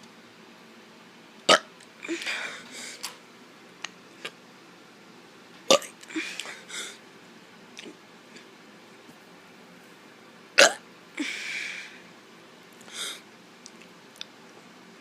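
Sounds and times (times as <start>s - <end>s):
child burping: 10.6s - 10.8s.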